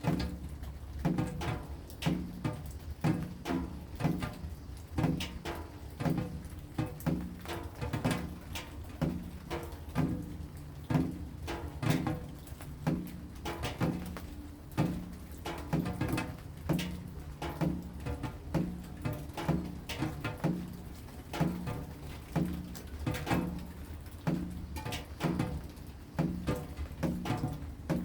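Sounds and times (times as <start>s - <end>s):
raindrops tapping on hollow object: 0.0s - 28.0s.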